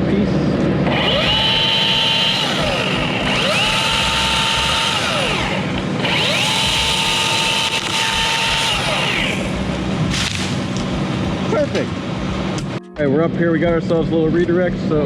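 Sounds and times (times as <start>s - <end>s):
electric chainsaw cutting a limb: 0.8s - 10.8s.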